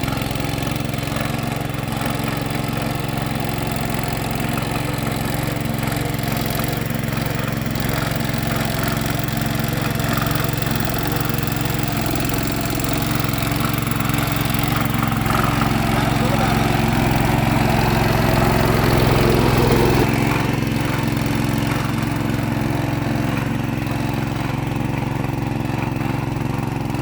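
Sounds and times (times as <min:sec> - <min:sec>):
tractor engine running: 0:00.0 - 0:27.0.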